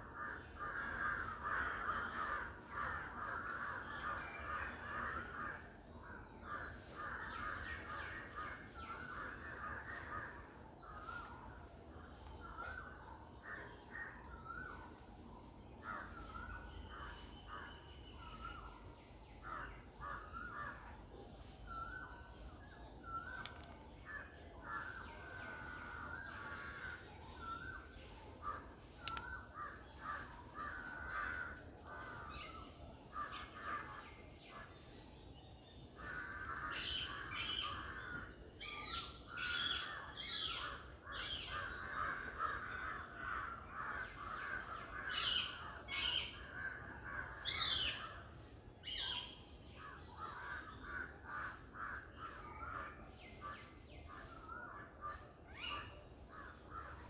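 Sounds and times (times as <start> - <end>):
birds high chirps: 26.4 - 31.6.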